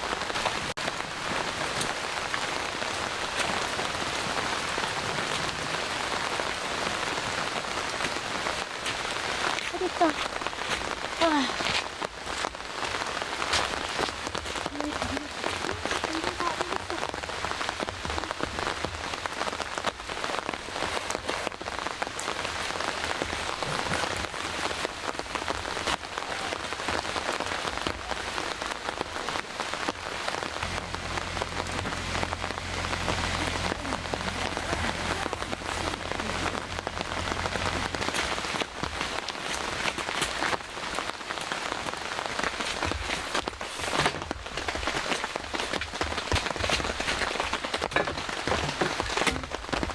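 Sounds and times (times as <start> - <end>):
rain pattering: 0.0 - 49.9
low steady hum: 30.6 - 39.1.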